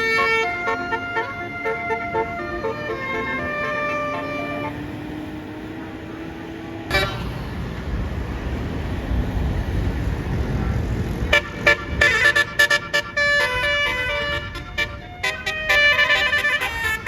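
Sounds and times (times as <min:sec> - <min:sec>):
multi-tone bus horn melody: 0:00.0 - 0:07.8, 0:11.1 - 0:17.0
bus engine rising: 0:00.0 - 0:17.0
road noise: 0:00.0 - 0:17.0.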